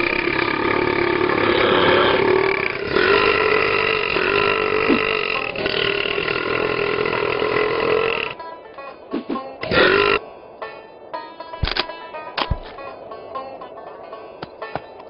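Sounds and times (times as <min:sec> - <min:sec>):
long belches: 0:00.0 - 0:08.4, 0:09.6 - 0:10.2.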